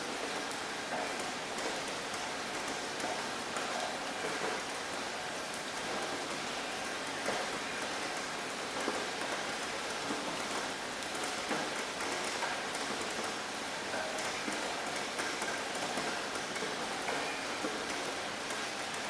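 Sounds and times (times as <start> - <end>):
rain pattering on a surface: 0.0 - 19.0.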